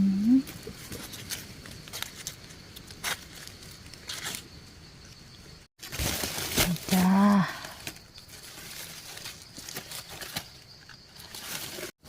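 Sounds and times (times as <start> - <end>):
twigs clicking and snapping: 0.5 - 4.5, 5.8 - 11.9
rustling leaf litter: 5.8 - 12.0.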